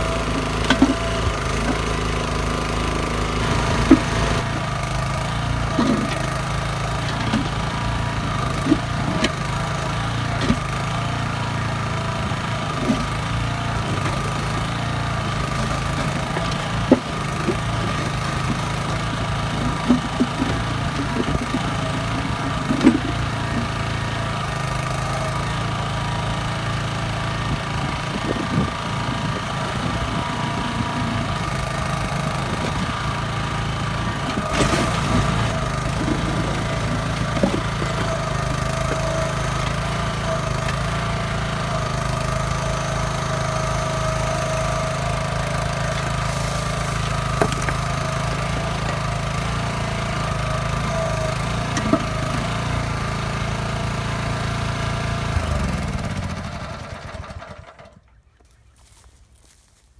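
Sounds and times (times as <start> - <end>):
backhoe engine running: 0.0 - 59.1.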